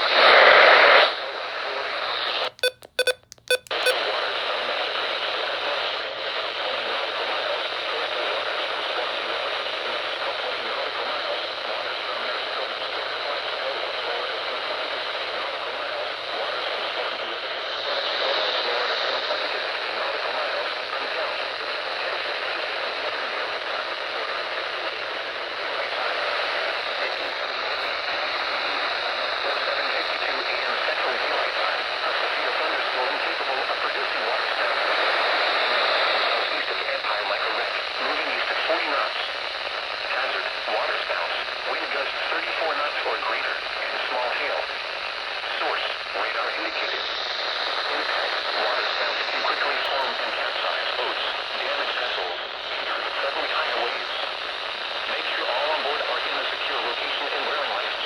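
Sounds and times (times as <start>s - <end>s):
radio static hiss: 0.0s - 3.1s, 3.7s - 58.0s
short electronic beeps: 2.6s - 4.0s.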